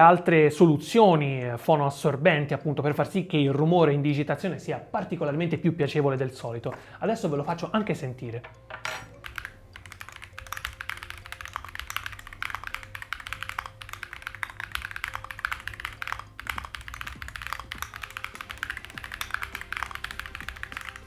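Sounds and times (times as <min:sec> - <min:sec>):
mechanical keyboard key clacks: 0:09.2 - 0:21.0.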